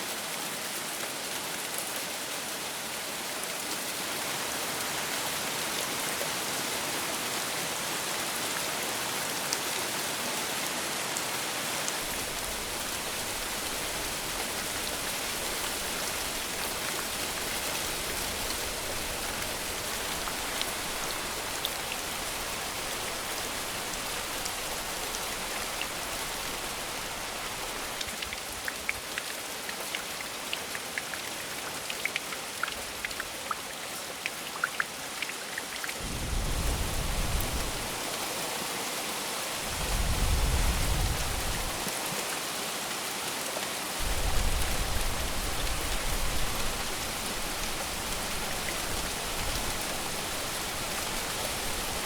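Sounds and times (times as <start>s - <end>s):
heavy rain: 0.0s - 52.0s
raindrops pattering: 11.9s - 38.2s, 39.6s - 42.0s, 44.0s - 52.0s
low rumbles of thunder: 36.0s - 38.0s, 39.7s - 41.8s, 44.0s - 52.0s.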